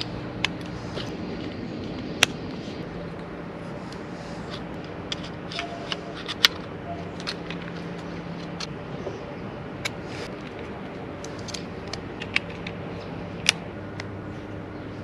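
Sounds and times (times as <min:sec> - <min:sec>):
steady low hum: 0:00.0 - 0:15.0
rifle parts clicking and clacking: 0:04.5 - 0:08.7, 0:09.8 - 0:12.8.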